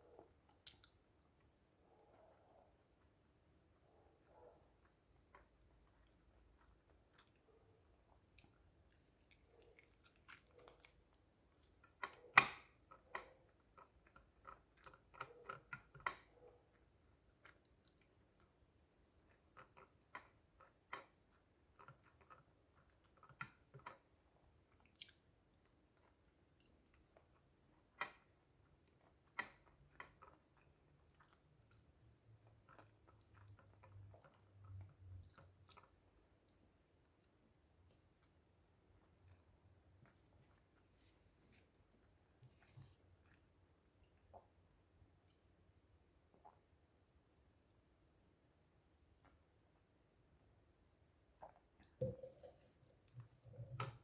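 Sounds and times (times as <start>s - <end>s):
person chewing and crunching food: 0.1s - 1.6s, 4.8s - 44.6s.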